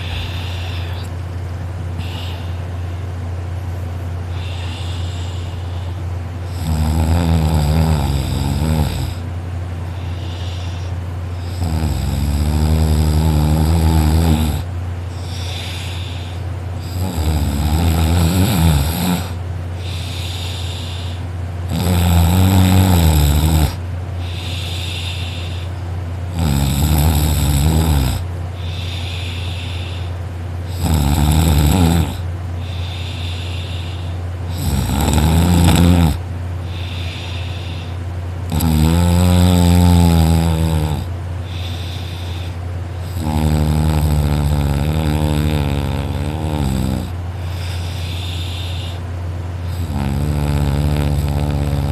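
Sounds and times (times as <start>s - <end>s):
person snoring loudly: 0.0s - 1.1s, 2.0s - 2.7s, 4.3s - 9.3s, 10.0s - 51.9s
low hum: 0.0s - 6.5s.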